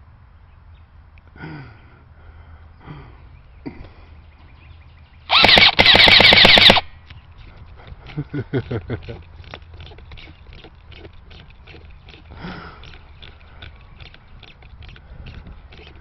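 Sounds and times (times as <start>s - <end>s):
airsoft gun firing bursts: 5.3s - 6.9s.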